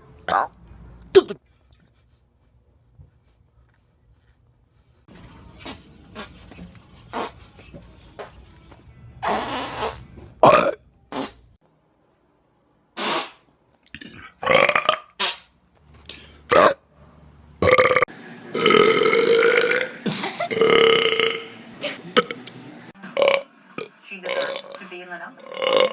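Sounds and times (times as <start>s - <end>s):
men belching: 10.4s - 10.8s, 18.6s - 21.5s, 25.4s - 25.9s.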